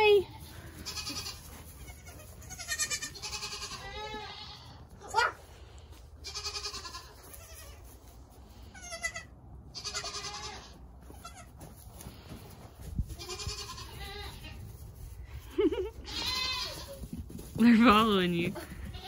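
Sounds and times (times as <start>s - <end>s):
goat kids bleating: 0.0s - 5.4s, 6.2s - 8.0s, 8.6s - 11.6s, 13.1s - 14.8s, 15.4s - 17.2s, 18.5s - 19.0s.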